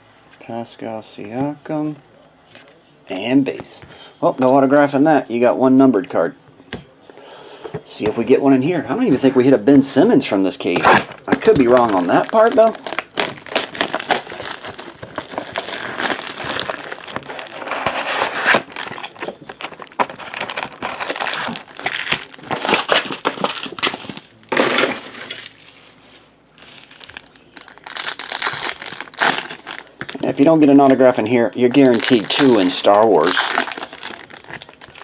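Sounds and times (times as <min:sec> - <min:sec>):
card pack wrappers crinkling: 0:10.6 - 0:26.0, 0:26.6 - 0:35.0
cards being handled: 0:10.8 - 0:24.2.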